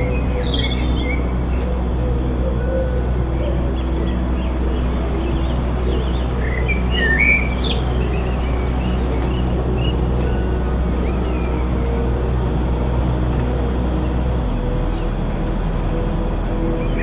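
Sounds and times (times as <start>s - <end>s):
small birds chirping: 0.0s - 2.0s, 2.9s - 12.1s
steady low rumble: 0.0s - 17.0s.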